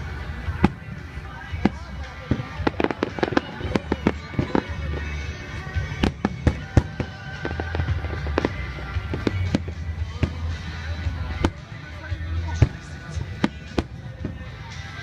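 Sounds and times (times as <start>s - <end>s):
fireworks bursting with bangs: 0.0s - 15.0s
music playing: 0.0s - 15.0s.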